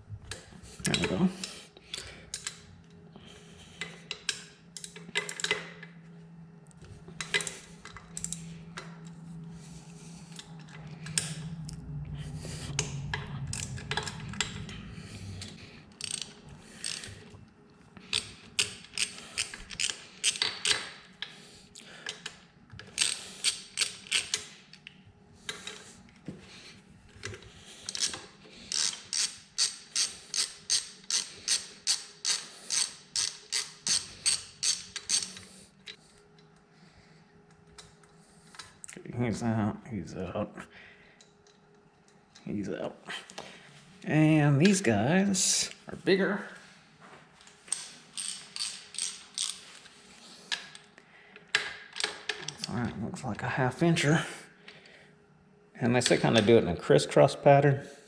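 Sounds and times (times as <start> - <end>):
low steady hum: 0.0 - 58.0
hand ratchet clicking: 16.0 - 17.1, 18.1 - 20.9, 23.0 - 24.5, 27.9 - 35.5, 47.7 - 49.7.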